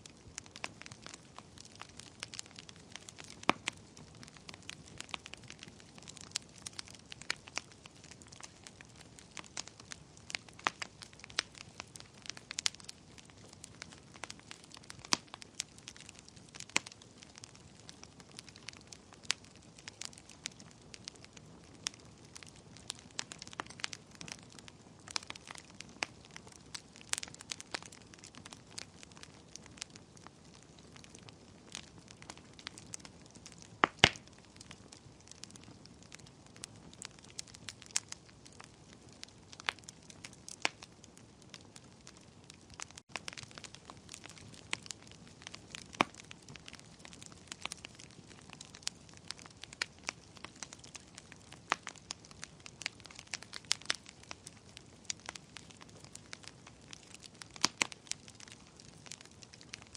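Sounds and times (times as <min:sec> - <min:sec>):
soft hiss of flames: 0:00.0 - 0:59.9
wood fire crackling and popping: 0:00.0 - 0:59.9.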